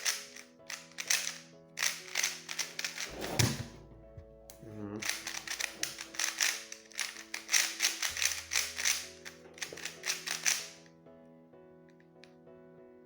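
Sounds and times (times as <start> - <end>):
speed cube clacking: 0.0 - 3.1, 5.0 - 10.9
background music: 0.0 - 13.0.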